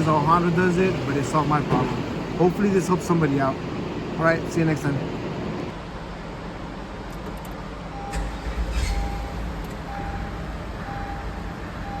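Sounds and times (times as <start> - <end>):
electronic warning beeps: 7.9 - 12.0.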